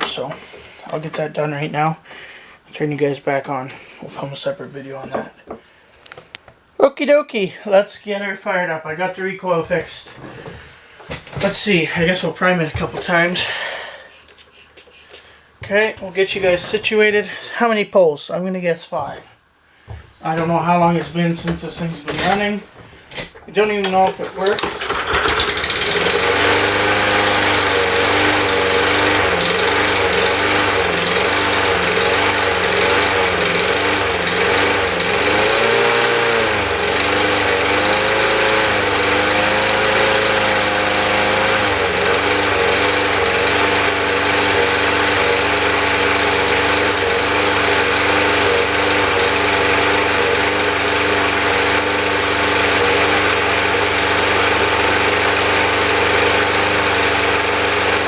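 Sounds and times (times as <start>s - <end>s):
lawnmower engine running: 23.8s - 58.0s.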